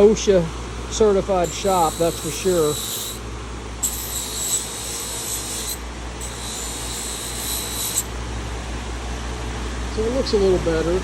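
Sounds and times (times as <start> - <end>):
electric grinder humming: 1.4 - 3.2, 3.8 - 8.1
knife blade scraping on grinder: 1.4 - 3.2, 3.8 - 8.1.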